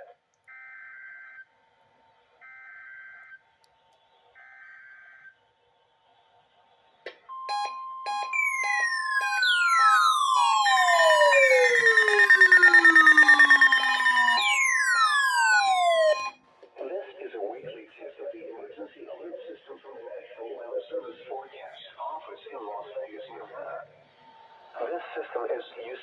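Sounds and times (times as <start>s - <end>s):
steady alarm tone with beeps: 7.3s - 16.4s
tones sliding down in pitch: 7.4s - 16.4s
warbling data tones: 8.4s - 16.4s.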